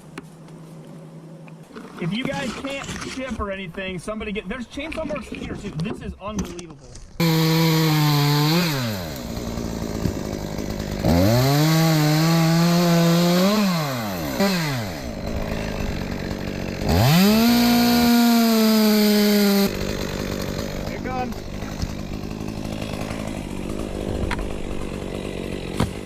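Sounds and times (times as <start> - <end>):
chainsaw idling: 7.2 - 26.0
chainsaw revving and cutting: 7.2 - 26.0.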